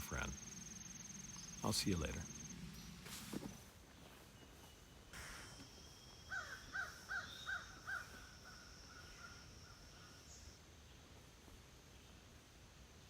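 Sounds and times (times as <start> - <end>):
bird calling: 0.0 - 3.6, 4.4 - 10.6
high insect buzz: 0.1 - 3.6, 5.2 - 10.5.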